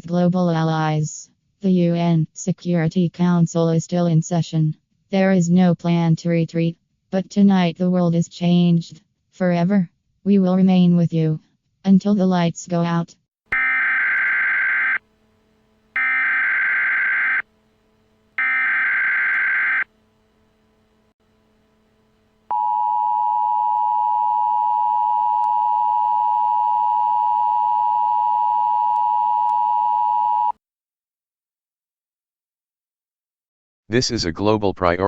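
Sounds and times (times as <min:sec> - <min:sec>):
electronic data bursts: 0:16.0 - 0:17.4.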